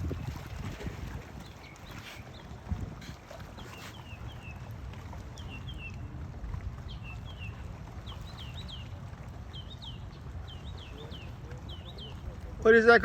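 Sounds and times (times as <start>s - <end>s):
birds chirping: 1.4s - 2.6s, 6.9s - 13.0s.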